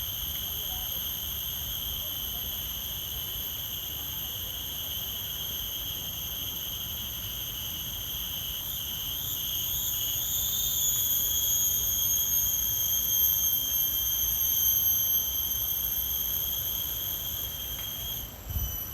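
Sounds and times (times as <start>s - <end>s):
insects high-pitched drone: 0.0s - 18.9s.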